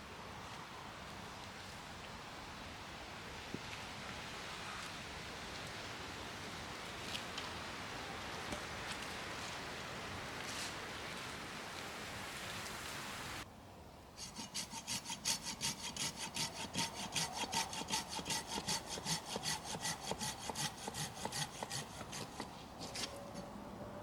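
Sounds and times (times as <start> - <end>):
hand saw cutting wood: 14.2 - 23.5.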